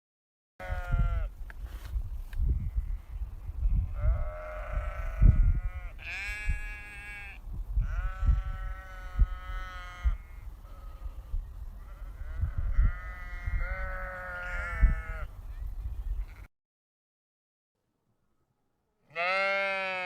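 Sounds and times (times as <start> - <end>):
sheep bleating: 0.6 - 1.3, 3.9 - 11.2, 11.8 - 15.3, 19.0 - 20.0.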